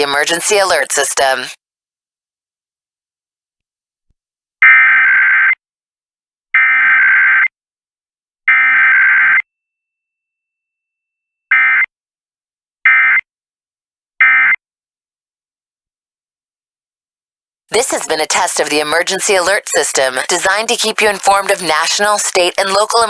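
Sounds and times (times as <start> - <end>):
digital data bursts: 17.7 - 23.0.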